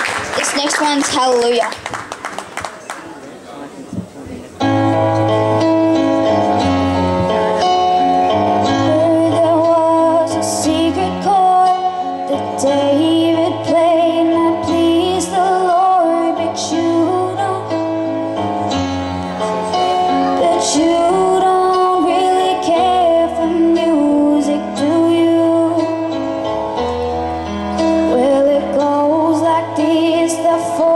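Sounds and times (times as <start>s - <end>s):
held chords accompaniment: 4.6s - 30.9s
woman singing slow melody: 8.7s - 17.9s, 20.2s - 26.3s, 28.0s - 30.9s.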